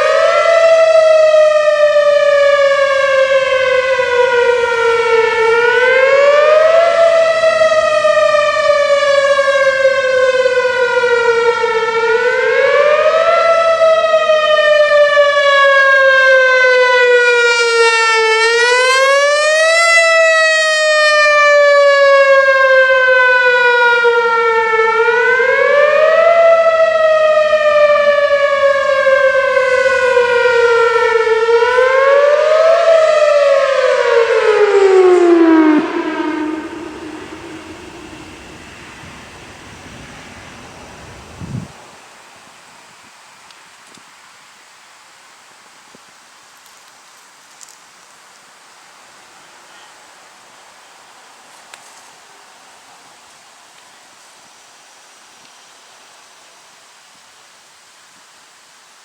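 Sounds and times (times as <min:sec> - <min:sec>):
warning siren wailing: 0:00.0 - 0:42.0.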